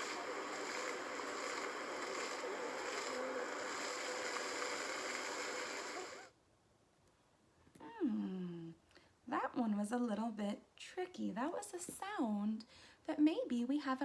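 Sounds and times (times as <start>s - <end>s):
fountain water splashing: 0.0s - 6.0s.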